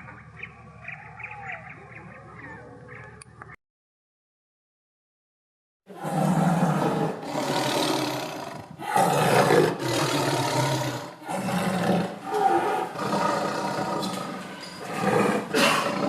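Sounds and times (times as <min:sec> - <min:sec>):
big cat roaring and growling: 0:05.9 - 0:16.0.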